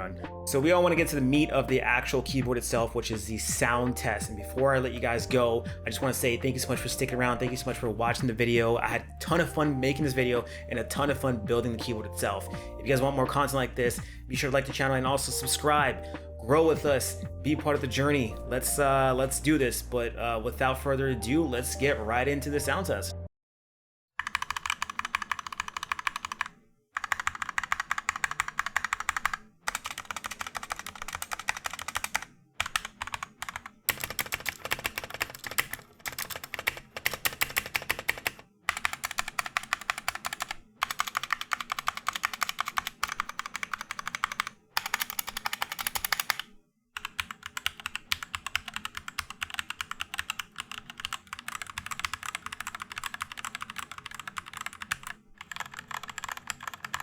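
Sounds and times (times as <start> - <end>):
mechanical keyboard typing: 24.2 - 57.0.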